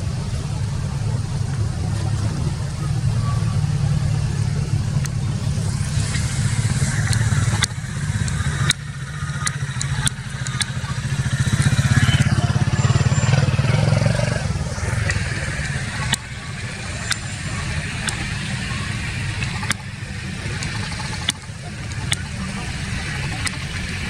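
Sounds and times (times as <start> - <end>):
engine running: 0.0 - 24.0
sharp clicks: 5.0 - 24.0.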